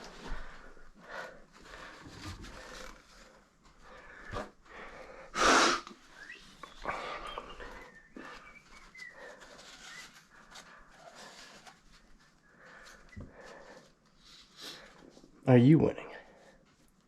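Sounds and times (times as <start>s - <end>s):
thin whistling tones: 6.1s - 10.6s.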